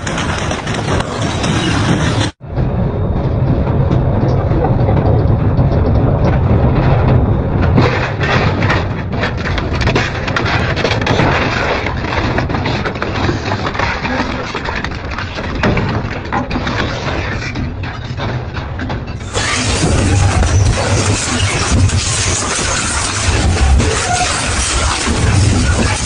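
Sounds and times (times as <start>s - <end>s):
industrial shredder drone: 0.0s - 16.4s, 18.6s - 26.0s
shredder crunching material: 19.2s - 26.0s.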